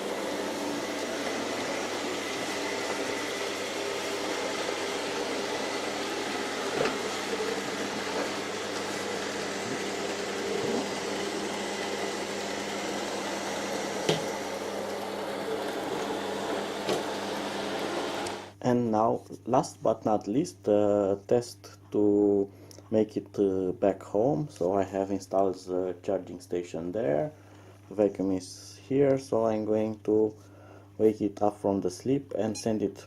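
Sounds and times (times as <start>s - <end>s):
robot vacuum cleaners whirring: 0.0s - 18.6s.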